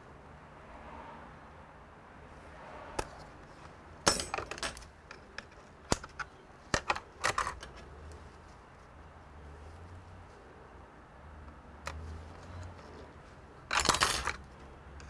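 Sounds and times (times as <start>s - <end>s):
parts clattering: 3.0s - 8.0s, 13.7s - 15.0s
small hard parts clicking: 4.1s - 7.9s, 13.7s - 14.5s.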